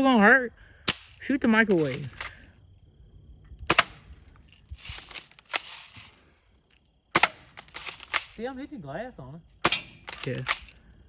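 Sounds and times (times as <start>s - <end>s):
bb gun shots: 3.7s - 4.2s, 7.1s - 8.4s, 9.6s - 10.7s.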